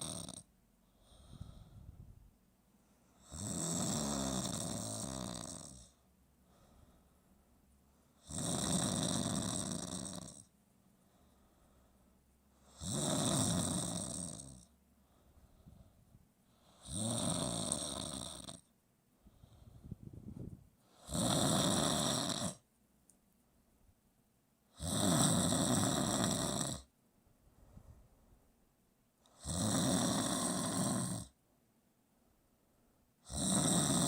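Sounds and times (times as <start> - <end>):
loud rattling snoring: 0.0 - 0.5, 3.2 - 6.0, 8.2 - 10.5, 12.6 - 14.7, 16.6 - 18.7, 20.9 - 22.6, 24.7 - 26.9, 29.3 - 31.4, 33.2 - 34.0.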